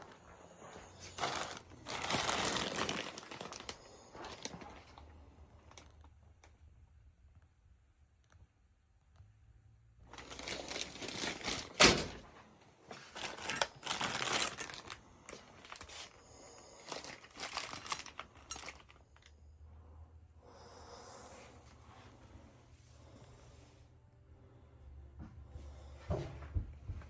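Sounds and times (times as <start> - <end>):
rustling: 0.0 - 6.1.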